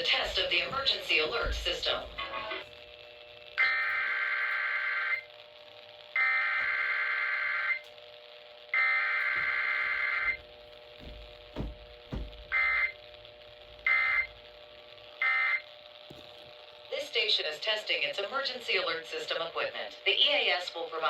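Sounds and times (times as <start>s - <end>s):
dull thumps: 0.0s - 2.4s, 10.2s - 12.8s.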